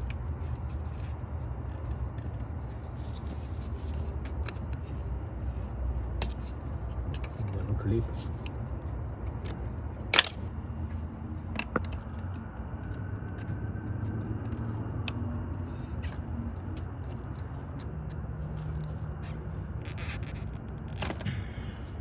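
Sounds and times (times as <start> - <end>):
steady low rumble: 0.0 - 22.0
sharp clicks and knocks of clips: 9.3 - 10.4.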